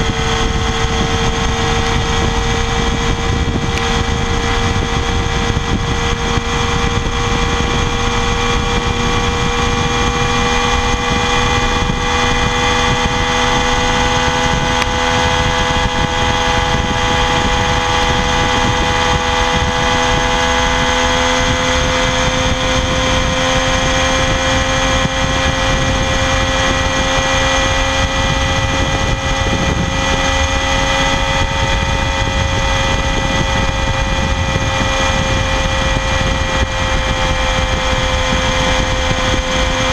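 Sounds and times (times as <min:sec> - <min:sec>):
motorcycle engine at high revs: 0:00.0 - 0:39.9.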